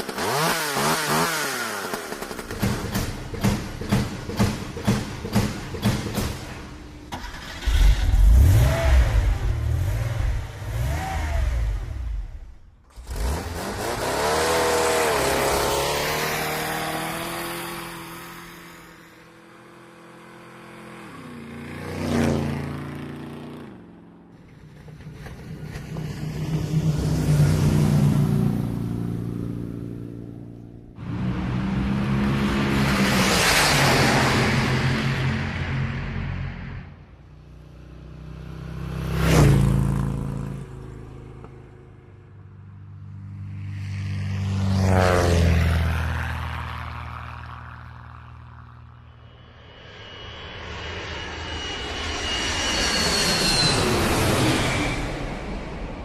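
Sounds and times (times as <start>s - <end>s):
vehicle engines revving: 0.0s - 37.0s
vehicle passing close by: 31.0s - 36.9s, 43.2s - 49.3s.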